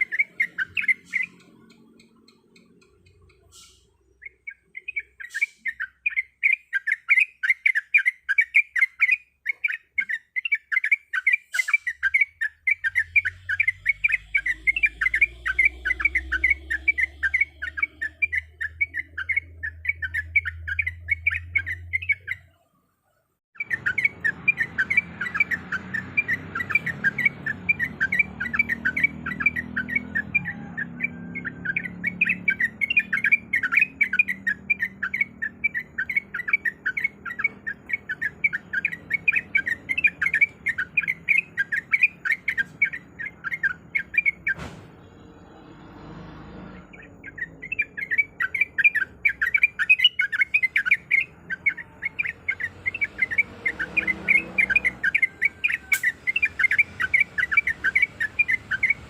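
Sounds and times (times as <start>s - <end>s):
bird chattering call: 0.0s - 22.5s, 46.9s - 59.0s.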